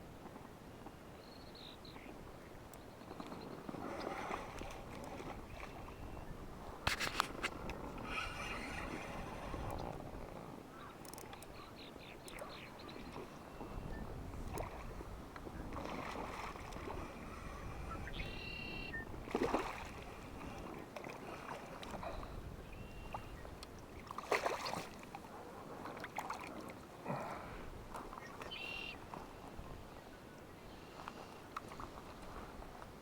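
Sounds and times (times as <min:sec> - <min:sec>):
water sloshing and splashing: 0:03.1 - 0:06.1, 0:06.9 - 0:10.3, 0:15.6 - 0:17.5, 0:19.2 - 0:22.2, 0:23.8 - 0:29.3
short bird calls: 0:28.3 - 0:29.0.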